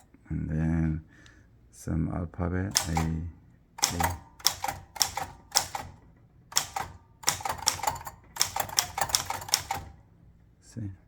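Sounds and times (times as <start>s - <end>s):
manual typewriter typing: 2.7s - 3.2s, 3.8s - 10.0s.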